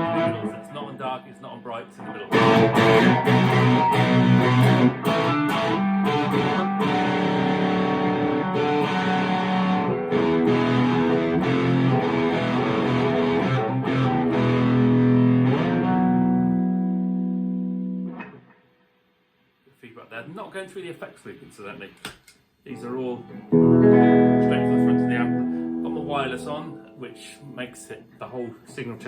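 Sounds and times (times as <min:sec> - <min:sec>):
distorted electric guitar chords: 0:00.0 - 0:01.4, 0:02.0 - 0:18.5, 0:23.1 - 0:27.6.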